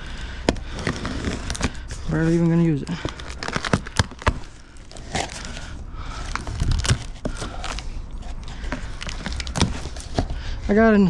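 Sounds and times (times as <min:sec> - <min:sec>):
rustling: 0:00.0 - 0:11.0
clicks and knocks of handled parts: 0:06.2 - 0:10.4.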